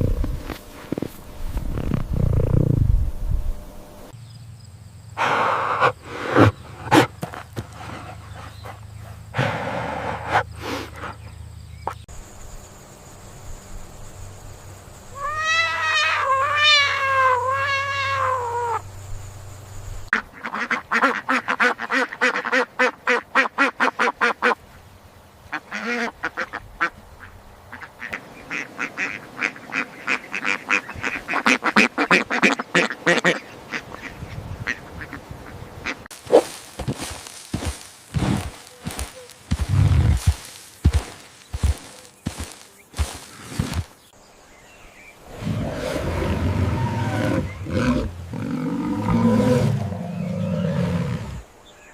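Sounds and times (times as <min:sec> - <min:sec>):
rising and falling pitched calls: 0:15.2 - 0:18.8, 0:45.3 - 0:51.3
ducks quacking: 0:20.1 - 0:24.6, 0:25.5 - 0:43.8.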